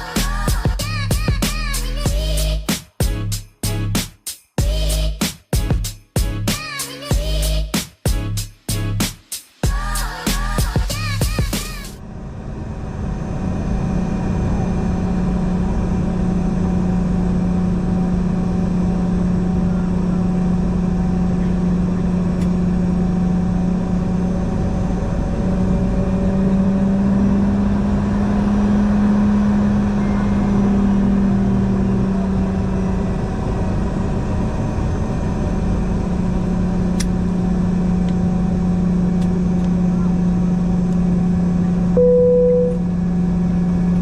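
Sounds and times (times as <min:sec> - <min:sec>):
vehicle interior hum: 0:27.4 - 0:44.0.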